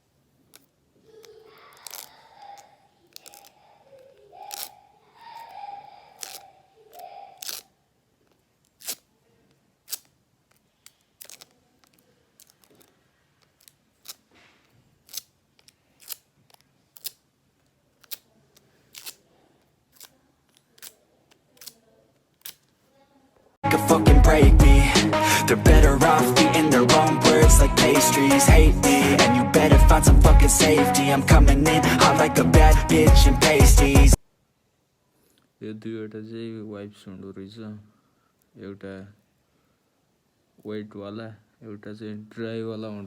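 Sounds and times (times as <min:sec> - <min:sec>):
squeaky plastic rubbing: 0:00.5 - 0:07.7, 0:08.3 - 0:09.1, 0:09.8 - 0:17.2
sharp small clicks: 0:15.0 - 0:19.2, 0:19.9 - 0:22.8.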